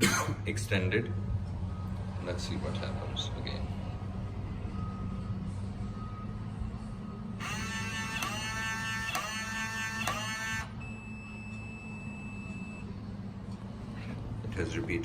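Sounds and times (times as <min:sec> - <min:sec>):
deadbolt motor whirring: 0:07.4 - 0:10.8.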